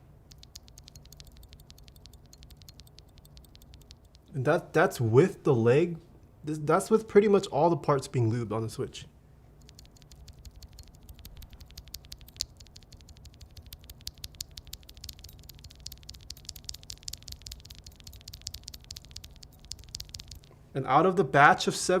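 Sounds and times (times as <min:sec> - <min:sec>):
rapid mechanical keyboard typing: 0:00.3 - 0:04.3, 0:09.6 - 0:20.5.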